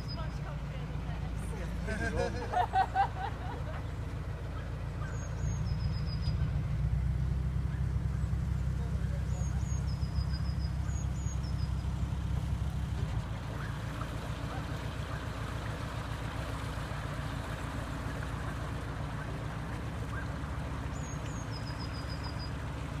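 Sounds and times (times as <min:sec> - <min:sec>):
diesel engine chugging: 0:00.0 - 0:23.0
small bird singing: 0:04.6 - 0:06.5, 0:09.2 - 0:11.9.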